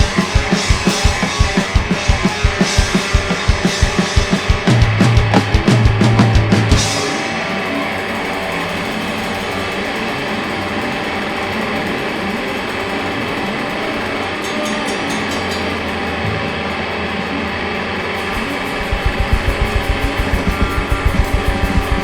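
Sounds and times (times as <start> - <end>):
drum hits: 0.0 - 7.5, 18.3 - 22.0
distorted electric guitar: 0.0 - 22.0.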